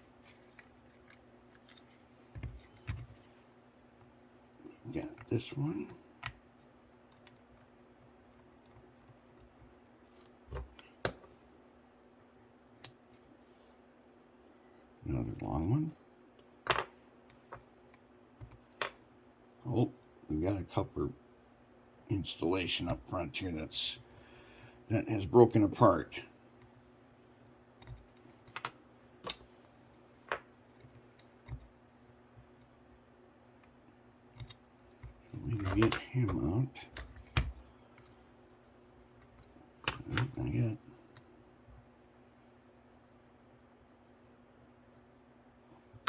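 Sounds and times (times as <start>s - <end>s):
faint steady hum: 0.0s - 46.0s
light clicks of small parts: 0.2s - 3.4s, 12.8s - 13.3s.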